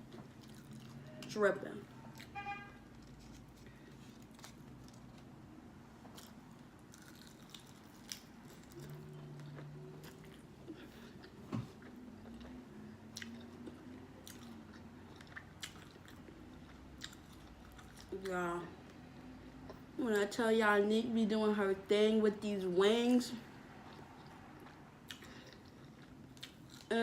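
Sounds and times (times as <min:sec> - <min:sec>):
chewing crispy food: 0:00.0 - 0:01.3, 0:01.9 - 0:18.3, 0:23.8 - 0:26.9.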